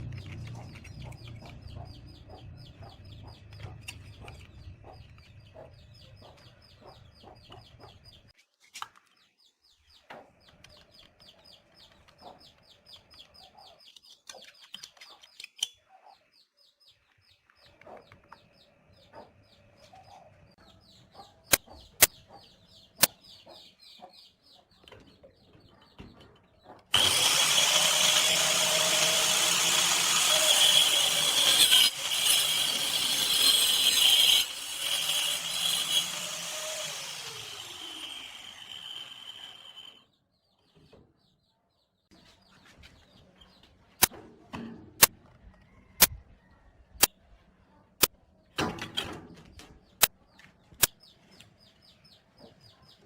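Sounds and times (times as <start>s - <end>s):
angle grinder running: 26.9s - 40.0s
grinder disc spinning down: 26.9s - 40.0s.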